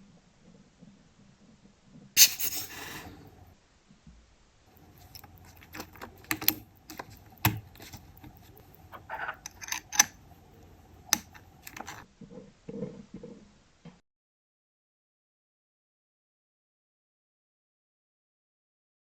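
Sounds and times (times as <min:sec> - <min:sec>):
faint steady hum: 0:02.2 - 0:12.2
small hard parts clicking: 0:04.7 - 0:12.1.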